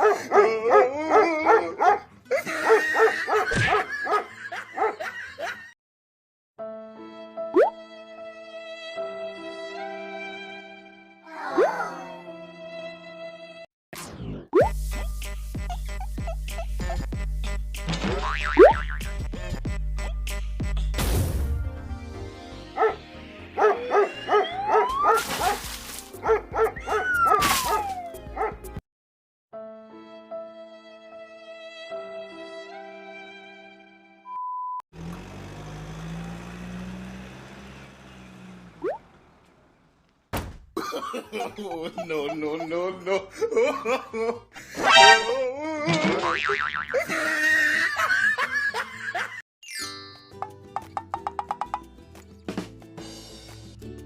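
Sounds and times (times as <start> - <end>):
dog barking: 0.0 - 5.0, 22.8 - 23.0, 23.6 - 25.6, 26.2 - 28.6
dog yipping and whining: 23.6 - 25.6, 26.6 - 28.5.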